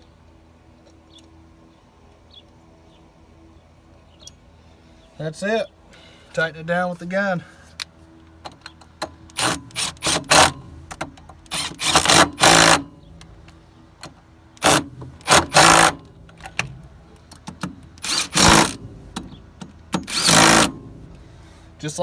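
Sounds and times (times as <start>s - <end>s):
impact gun bursts: 9.4s - 10.7s, 11.5s - 12.9s, 14.6s - 16.8s, 18.0s - 21.4s.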